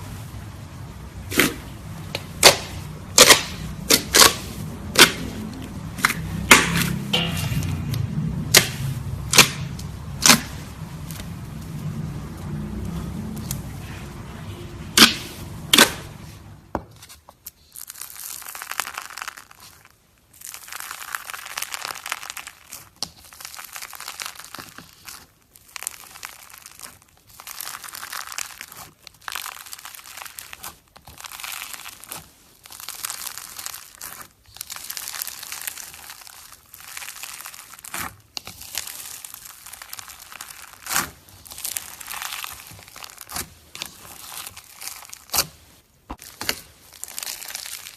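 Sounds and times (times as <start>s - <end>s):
slime squeezed crackling: 0.0s - 16.7s, 17.4s - 47.9s.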